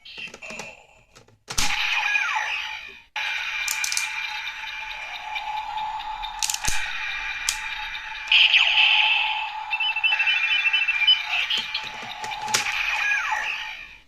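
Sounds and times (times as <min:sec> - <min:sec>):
plastic toy clicks: 0:03.7 - 0:04.1, 0:06.4 - 0:06.8
electronic beeps: 0:07.0 - 0:13.4.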